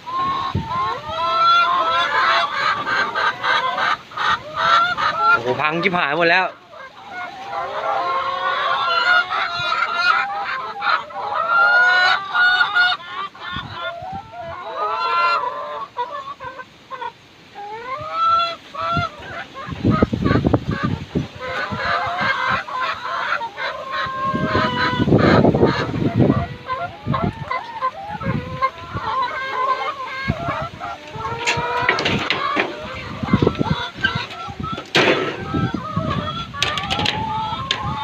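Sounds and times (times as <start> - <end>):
geese honking: 0.0 - 20.2, 20.8 - 38.0
wind rumble on microphone: 0.1 - 1.2, 18.9 - 22.8, 24.0 - 29.2, 30.2 - 38.0.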